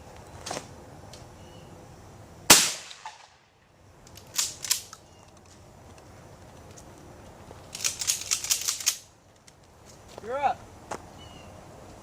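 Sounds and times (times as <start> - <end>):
shotgun shot: 2.5 - 3.4.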